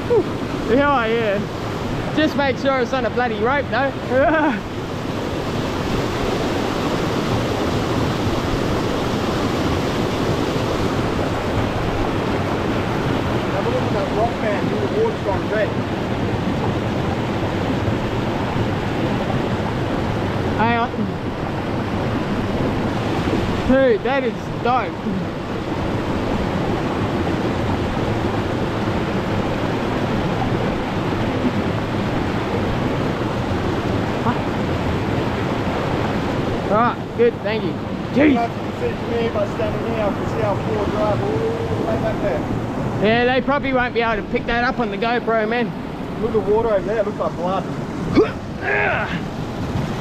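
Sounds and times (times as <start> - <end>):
waterfall rushing: 0.0 - 50.0.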